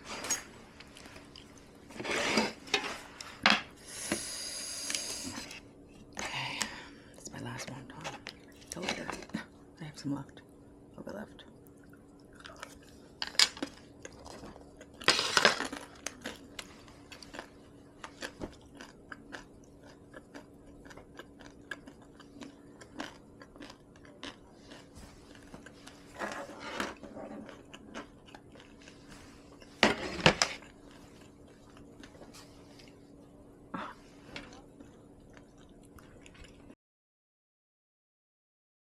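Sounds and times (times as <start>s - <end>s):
utensils clinking against dishes: 0.1s - 0.6s
person chewing food: 0.7s - 3.4s, 11.5s - 29.8s, 30.4s - 36.8s.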